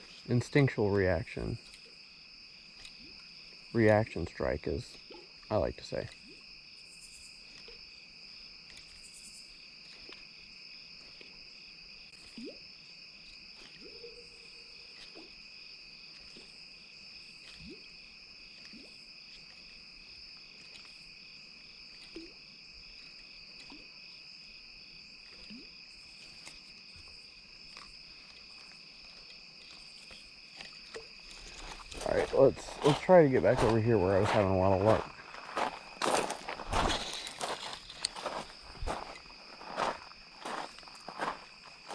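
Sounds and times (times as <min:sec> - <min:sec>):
crickets trilling: 0:00.0 - 0:41.9.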